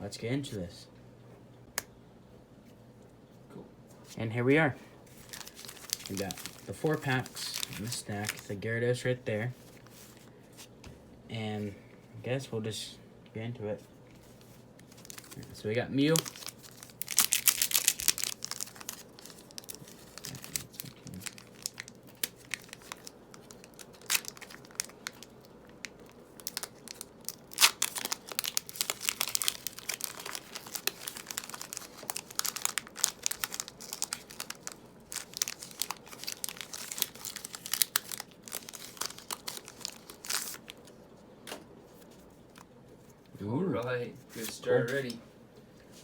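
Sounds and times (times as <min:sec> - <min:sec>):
foil pack crinkling and tearing: 0:05.1 - 0:08.6, 0:14.2 - 0:41.0.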